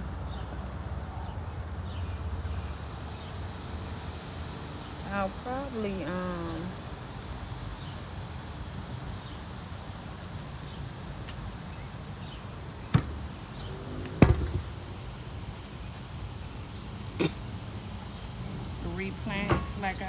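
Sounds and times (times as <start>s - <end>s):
sharp knocks: 12.9s - 13.3s, 14.1s - 14.8s.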